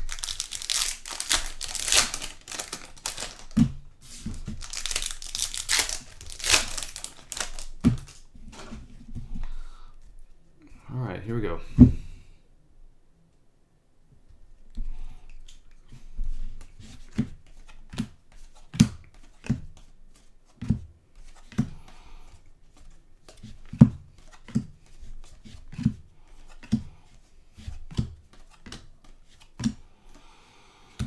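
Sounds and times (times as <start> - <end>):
cards being flipped: 0.0 - 8.8
faint rustling: 0.0 - 10.2.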